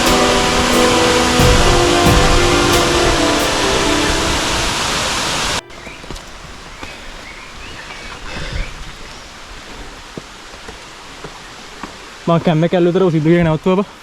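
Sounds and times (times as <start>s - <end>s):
loud music: 0.0s - 6.0s
outdoor hiss: 0.0s - 14.0s
faint chirps: 4.0s - 10.0s.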